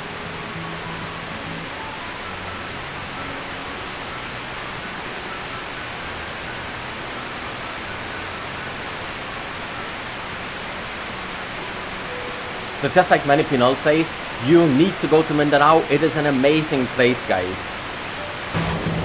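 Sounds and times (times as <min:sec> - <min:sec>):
waterfall rushing: 0:00.0 - 0:18.9.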